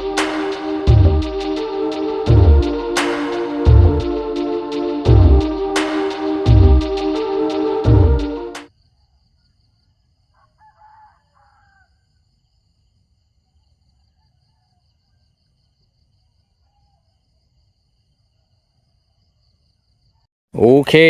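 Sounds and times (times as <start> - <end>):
background music: 0.0 - 8.6
rooster crowing faintly: 10.3 - 12.1.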